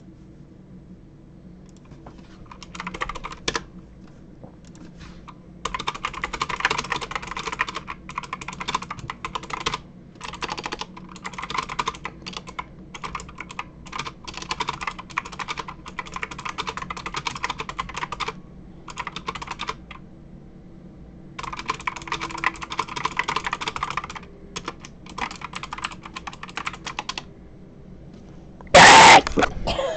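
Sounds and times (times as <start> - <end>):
mechanical keyboard keys clicking: 2.5 - 3.7, 5.6 - 20.0, 21.4 - 27.2.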